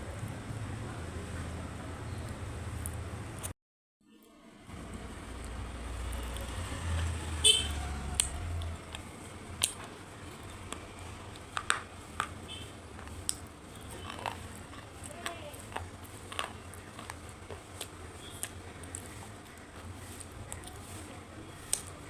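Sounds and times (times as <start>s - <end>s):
crisp crunching while chewing: 7.8s - 22.0s.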